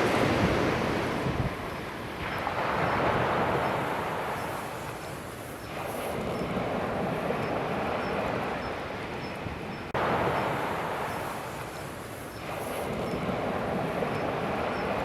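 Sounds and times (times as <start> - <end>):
surf washing on shore: 0.0 - 15.0.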